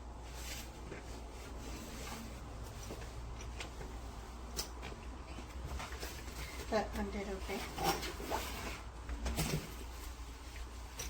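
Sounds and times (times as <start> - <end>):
suitcase rubbing and scraping: 7.5 - 10.4.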